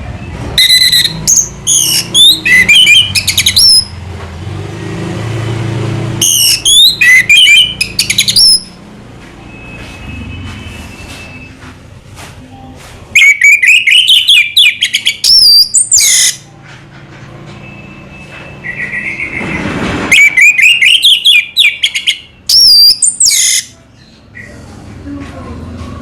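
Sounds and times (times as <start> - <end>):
thrush twittering song: 13.2 - 16.5.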